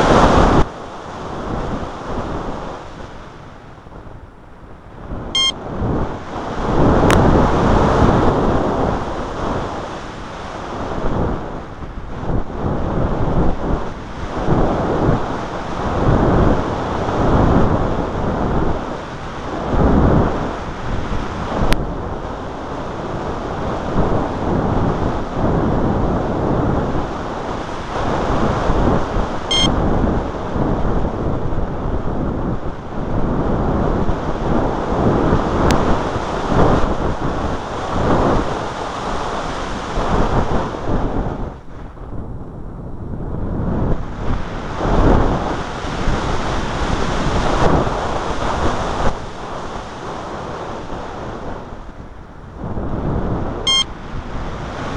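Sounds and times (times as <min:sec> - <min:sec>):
wind buffeting microphone: 0:00.0 - 0:54.9
short high electronic chirp: 0:29.5 - 0:29.7, 0:53.7 - 0:53.9.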